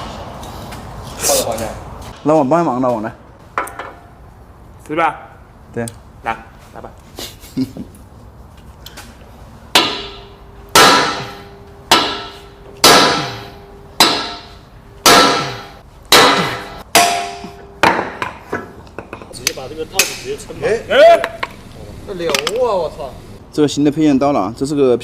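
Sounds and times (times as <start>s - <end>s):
hammer blows on steel: 9.8s - 18.5s.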